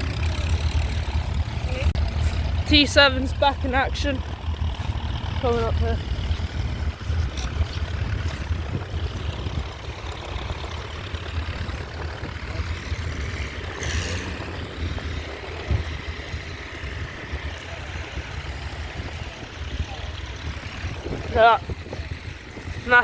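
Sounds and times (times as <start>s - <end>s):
tractor diesel engine running: 0.0s - 23.0s
wind rumble on microphone: 0.0s - 23.0s.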